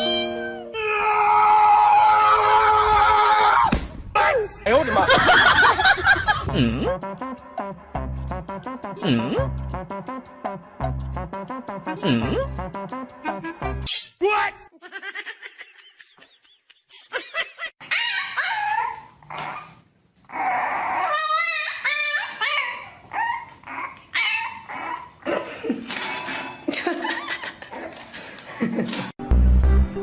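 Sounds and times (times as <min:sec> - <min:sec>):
dog whining and yipping: 0:17.8 - 0:25.2.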